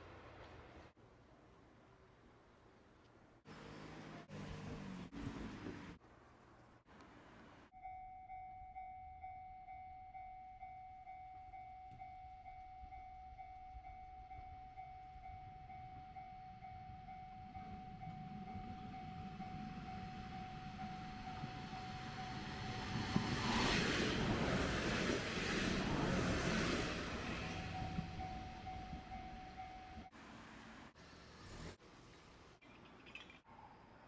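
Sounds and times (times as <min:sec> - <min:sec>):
level-crossing warning bell ringing: 0:07.7 - 0:23.0, 0:26.8 - 0:30.1
diesel train rumbling: 0:16.0 - 0:32.6.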